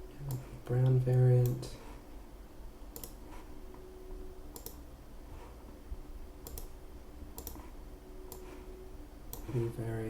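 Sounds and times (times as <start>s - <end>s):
computer mouse clicking: 2.9s - 3.5s, 4.5s - 4.8s, 6.4s - 6.7s, 7.4s - 8.6s, 9.3s - 9.6s.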